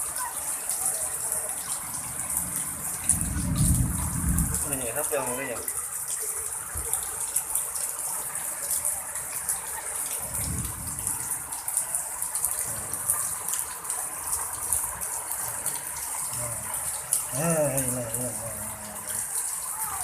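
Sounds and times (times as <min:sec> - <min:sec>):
heavy rain pouring: 0:00.0 - 0:20.0
wind gust: 0:03.2 - 0:04.7, 0:10.2 - 0:11.4.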